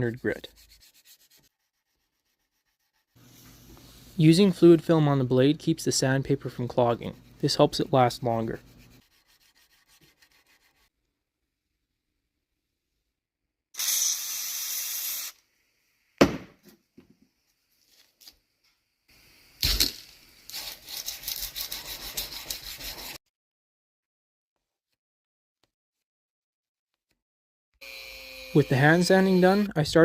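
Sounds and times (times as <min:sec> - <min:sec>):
sandpaper rubbing on metal: 0:00.0 - 0:04.2, 0:06.7 - 0:10.9, 0:20.5 - 0:23.2
aerosol spray hiss: 0:13.8 - 0:15.4.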